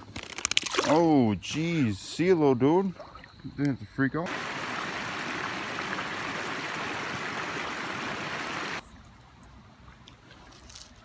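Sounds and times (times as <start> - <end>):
water rushing over rocks: 4.3 - 8.8.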